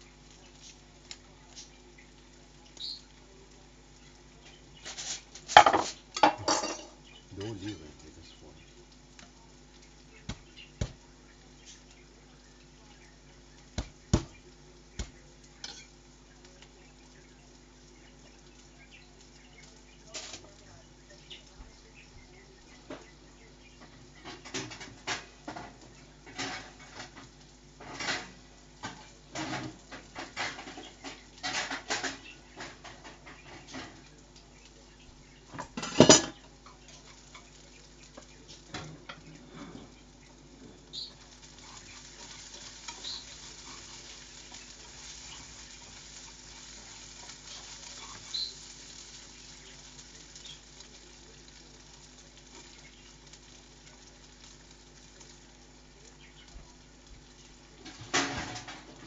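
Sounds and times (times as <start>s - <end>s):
steady hiss: 0.0s - 59.0s
dishes and cutlery clinking: 4.9s - 7.0s, 15.6s - 15.9s, 27.8s - 34.0s, 35.5s - 36.4s.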